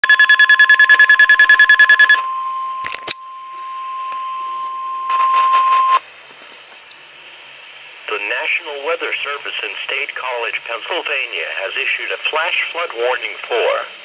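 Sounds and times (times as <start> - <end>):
rapid alert siren beeping: 0.0 - 2.8
steady warning alarm tone: 0.0 - 6.0.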